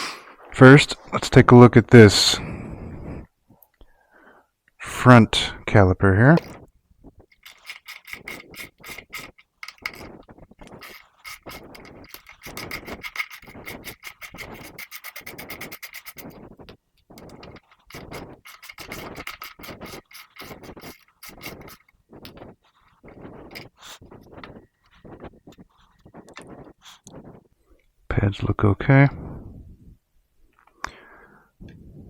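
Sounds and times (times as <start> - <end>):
socket ratchet clicking: 6.4 - 6.6, 7.3 - 25.2
metal parts scraping and handling: 6.4 - 27.5.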